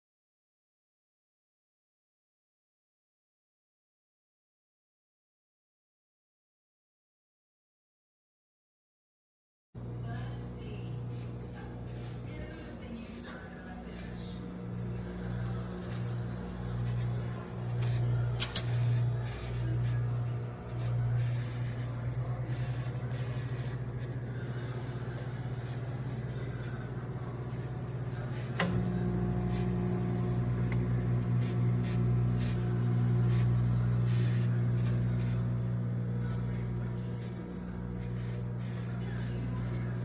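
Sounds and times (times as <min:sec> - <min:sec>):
microwave oven humming: 0:09.8 - 0:40.0
microwave click: 0:15.4 - 0:19.3, 0:28.2 - 0:32.2.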